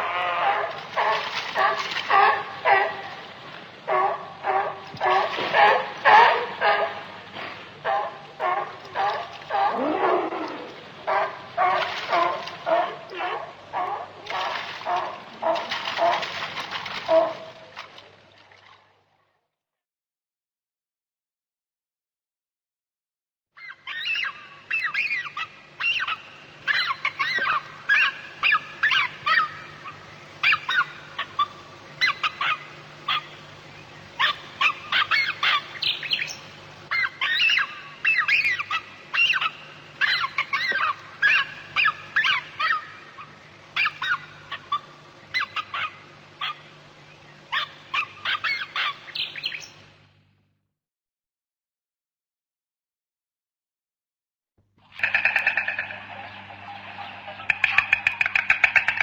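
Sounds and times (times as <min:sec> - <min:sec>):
birds calling: 0:23.6 - 0:50.0, 0:54.9 - 0:59.0
faint low hum: 0:54.8 - 0:59.0.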